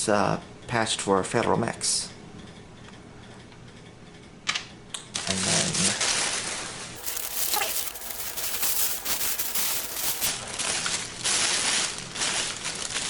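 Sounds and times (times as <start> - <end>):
packaging crinkling: 7.0 - 10.4.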